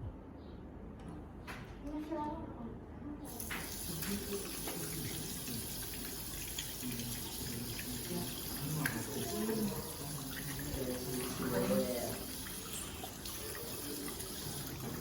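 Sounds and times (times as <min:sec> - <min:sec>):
tap water running into sink: 0:03.3 - 0:15.0.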